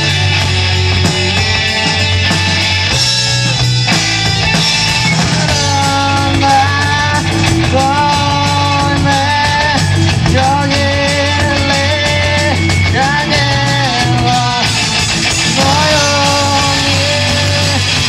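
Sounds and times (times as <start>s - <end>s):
rock band playing live: 0.0s - 18.0s
lead vocals singing: 4.9s - 18.0s.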